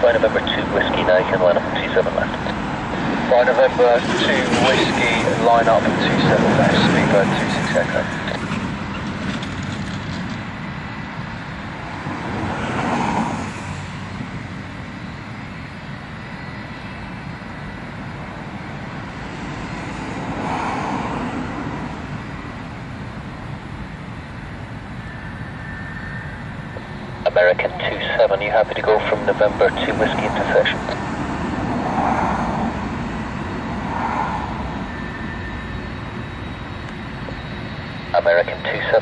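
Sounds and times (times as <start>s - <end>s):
jet airliner engines rumbling: 0.0s - 39.0s.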